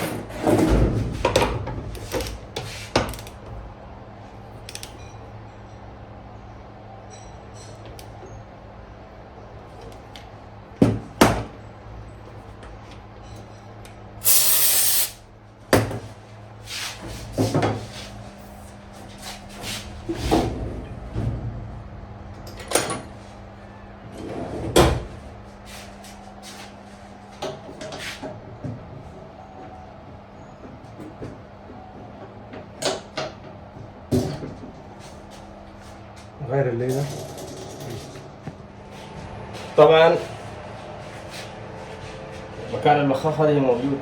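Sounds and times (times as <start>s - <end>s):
short hiss: 14.2s - 15.2s
steady low hum: 16.3s - 27.4s.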